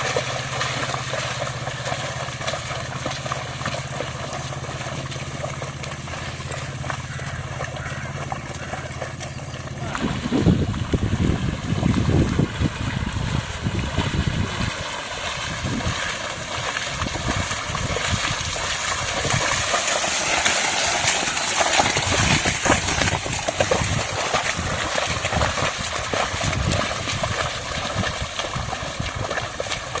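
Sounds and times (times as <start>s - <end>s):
muddy water sloshing and splashing: 0.0s - 30.0s
wind buffeting microphone: 9.7s - 30.0s.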